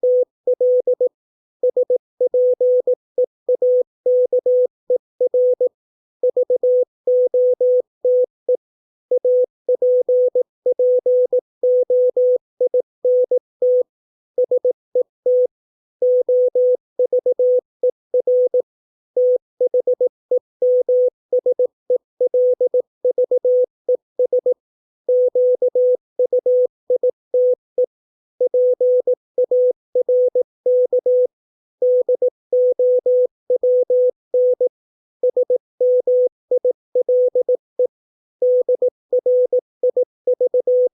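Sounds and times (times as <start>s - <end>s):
morse code beeps: 19.2s - 27.6s, 28.4s - 40.9s.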